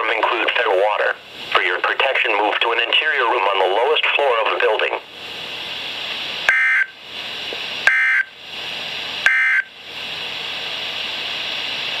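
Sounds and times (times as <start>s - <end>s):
radio static hiss: 0.0s - 5.4s.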